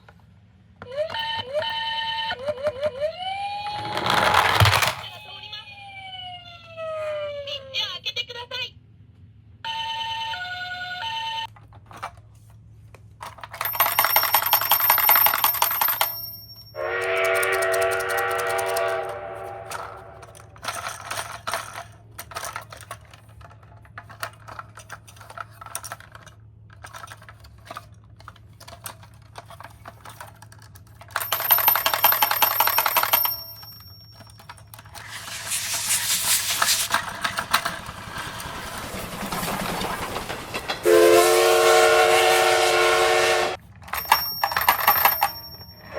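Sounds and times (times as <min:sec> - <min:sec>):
toy cars clattering on plastic: 0:00.0 - 0:05.2, 0:11.4 - 0:40.9, 0:43.6 - 0:45.9
thin whirring: 0:34.8 - 0:40.5.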